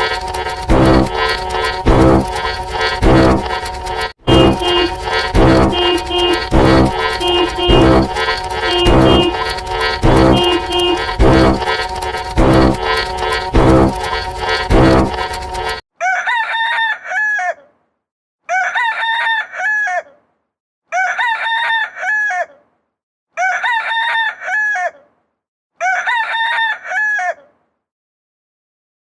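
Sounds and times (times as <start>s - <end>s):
rooster crowing: 16.0s - 17.6s, 18.5s - 20.0s, 21.0s - 22.4s, 23.4s - 25.0s, 25.8s - 27.4s.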